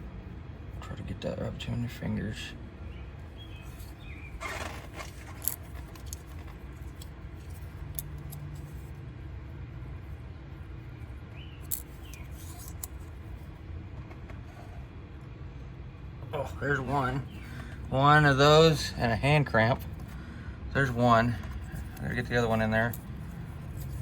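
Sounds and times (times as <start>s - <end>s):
low background rumble: 0.0s - 24.0s
metal pins clicking and scraping: 3.5s - 8.9s, 11.6s - 13.2s, 21.3s - 24.0s.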